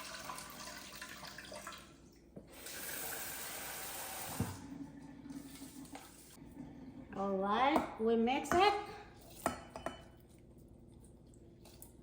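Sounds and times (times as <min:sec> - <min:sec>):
faucet stream: 0:00.0 - 0:07.2.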